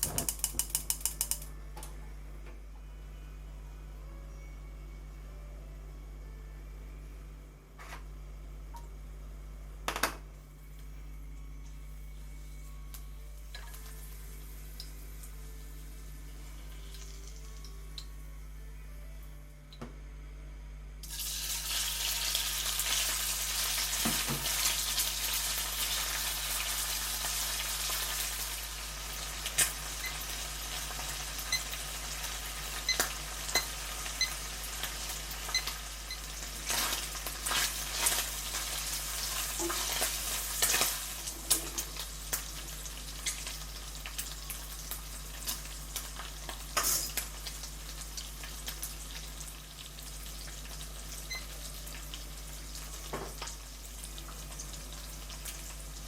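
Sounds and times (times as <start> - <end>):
utensil clicking against pan: 0.1 - 1.5
food sizzling in oil: 21.0 - 56.0.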